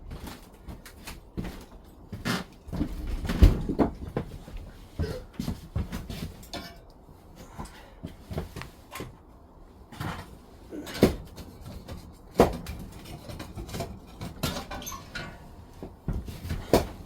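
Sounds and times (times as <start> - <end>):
objects knocking and clattering: 2.6 - 6.9, 10.0 - 17.0.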